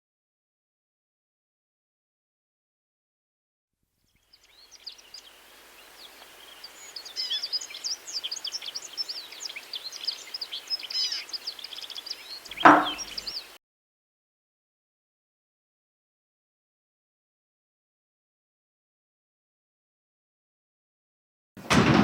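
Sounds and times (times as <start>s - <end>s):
small birds chirping: 4.1s - 13.6s
steady hiss: 4.4s - 13.6s
loud thump: 12.6s - 13.2s, 21.6s - 22.0s.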